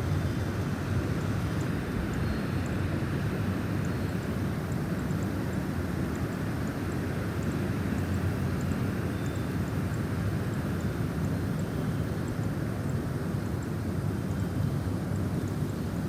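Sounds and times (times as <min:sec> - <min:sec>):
faint high ticks: 0:01.5 - 0:02.8, 0:03.7 - 0:10.1.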